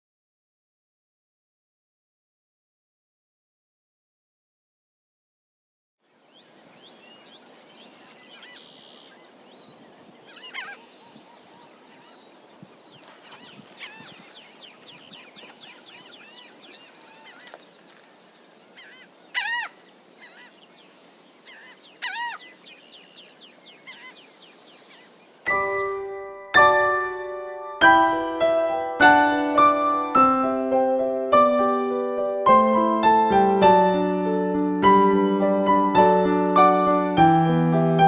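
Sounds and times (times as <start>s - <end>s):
high-pitched insect drone: 6.1s - 26.2s
bird chirps and whistled calls: 6.2s - 26.1s.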